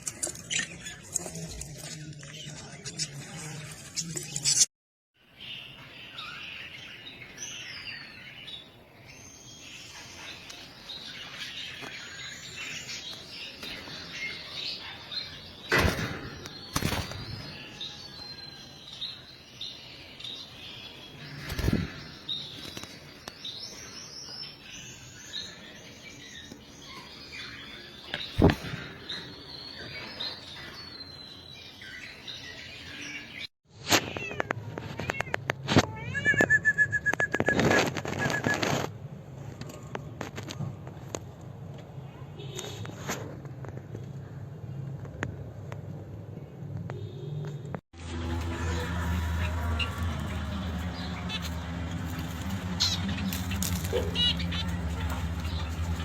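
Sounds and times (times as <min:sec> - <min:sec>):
budgerigars chattering and chirping: 0:48.6 - 0:56.0.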